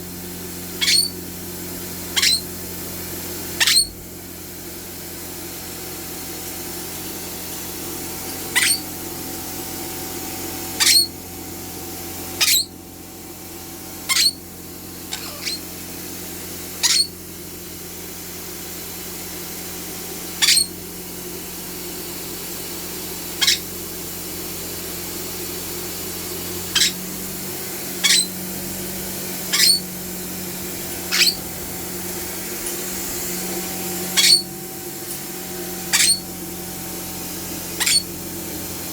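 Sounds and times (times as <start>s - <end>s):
vacuum cleaner running: 0.0s - 38.9s
pet squeaking: 0.8s - 1.2s, 2.2s - 2.5s, 3.6s - 4.0s, 8.5s - 8.9s, 10.8s - 11.1s, 12.4s - 12.7s, 14.1s - 14.4s, 15.1s - 15.7s, 16.8s - 17.2s, 20.4s - 20.7s, 23.4s - 23.7s, 26.7s - 27.1s, 28.0s - 28.4s, 29.5s - 29.9s, 31.0s - 31.6s, 34.1s - 34.6s, 35.9s - 36.3s, 37.8s - 38.1s.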